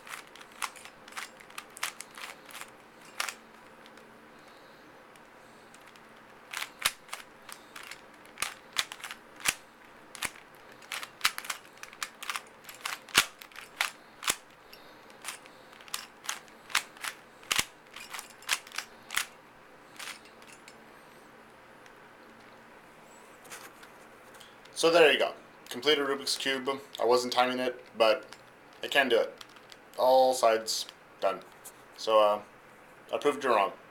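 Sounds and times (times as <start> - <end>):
puzzle cube clicking: 0.0 - 4.0, 5.1 - 19.3.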